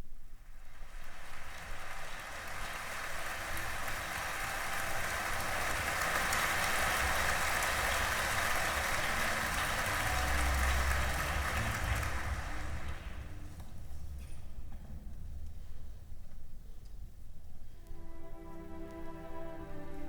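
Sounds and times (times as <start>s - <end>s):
audience applause: 0.5s - 13.7s.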